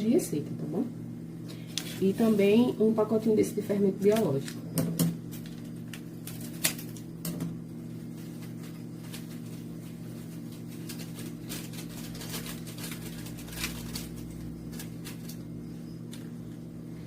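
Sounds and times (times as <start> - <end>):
steady low hum: 0.0 - 17.0
packet crinkling: 5.2 - 7.1, 8.0 - 15.5.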